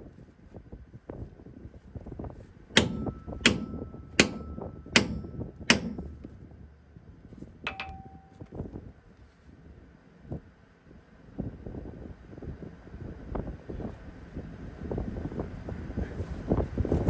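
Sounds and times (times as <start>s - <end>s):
hammer striking steel: 2.8s - 6.9s, 7.7s - 8.5s
light metal rattling: 2.8s - 8.6s.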